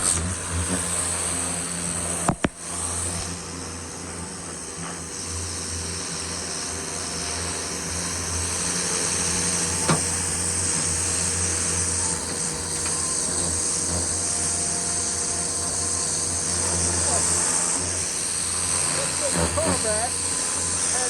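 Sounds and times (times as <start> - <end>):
pressure washer engine humming: 0.0 - 21.0
water spray hissing: 0.0 - 21.0
sharp click: 2.3 - 2.6.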